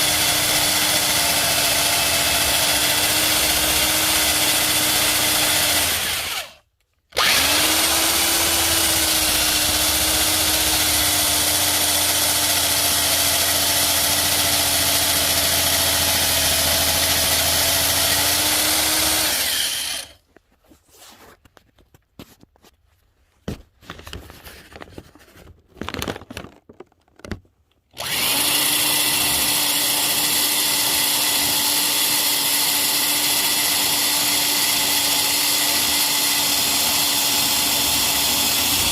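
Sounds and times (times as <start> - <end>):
electric drill running: 0.0 - 6.6, 7.2 - 20.2, 28.0 - 38.9.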